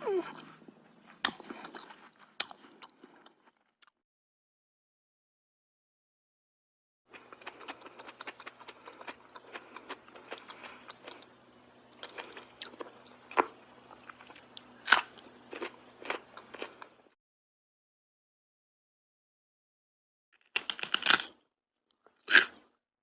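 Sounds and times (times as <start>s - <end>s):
faint steady hum: 0.0s - 3.3s, 7.1s - 17.1s
chewing crunchy food: 0.0s - 3.9s, 7.1s - 17.2s, 20.4s - 21.4s, 22.1s - 22.7s.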